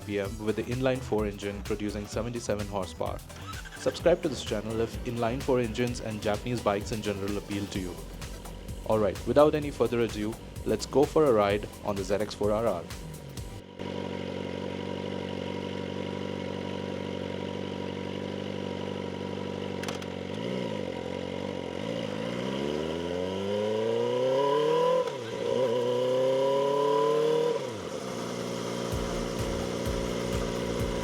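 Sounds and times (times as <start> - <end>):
motorcycle engine revving: 0.0 - 31.0
click: 19.8 - 20.1.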